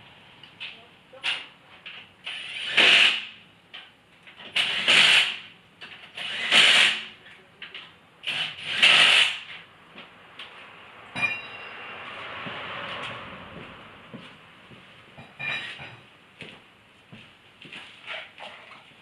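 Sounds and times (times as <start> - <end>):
power tool bursts: 2.2 - 3.3, 4.6 - 5.4, 6.2 - 7.0, 8.3 - 9.5.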